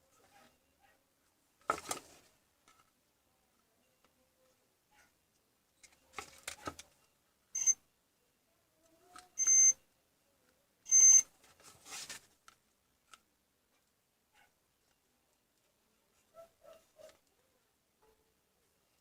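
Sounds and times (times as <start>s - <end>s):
soft clicks and scraping: 1.2s - 3.0s, 3.6s - 7.2s, 11.4s - 17.4s
short high electronic beeps: 7.6s - 7.8s, 9.4s - 9.8s, 10.9s - 11.2s.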